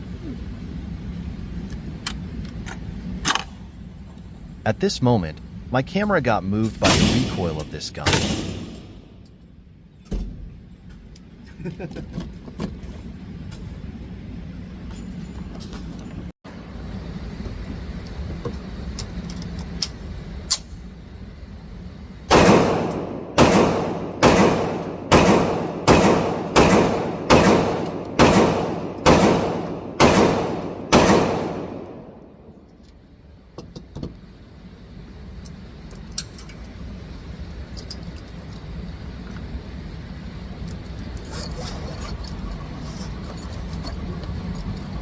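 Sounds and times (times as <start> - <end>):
gunshots ringing: 6.8 - 9.0, 22.3 - 32.2.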